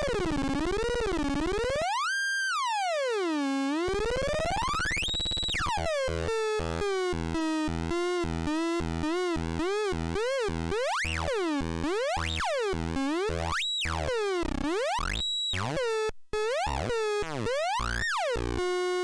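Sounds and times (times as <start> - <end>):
buzzy synthesizer drone sweeping: 3.9 - 6.8.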